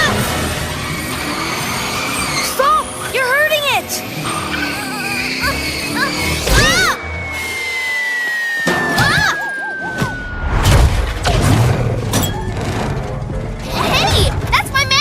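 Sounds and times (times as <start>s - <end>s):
swooping chirps: 4.1s - 10.6s
cartoon action music: 4.6s - 12.0s
slowly falling whistle: 6.2s - 10.6s
crashes and thuds: 10.5s - 14.5s.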